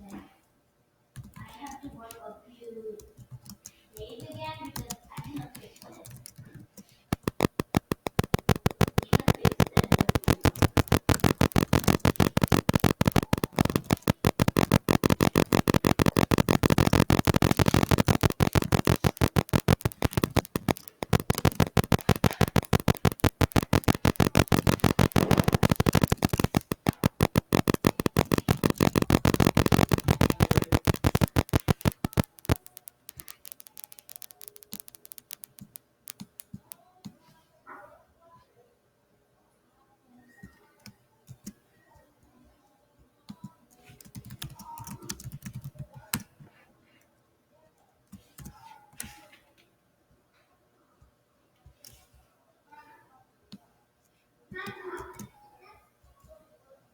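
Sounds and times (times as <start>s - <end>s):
keyboard typing clicks: 3.2s - 6.4s, 7.1s - 36.7s, 44.0s - 46.2s.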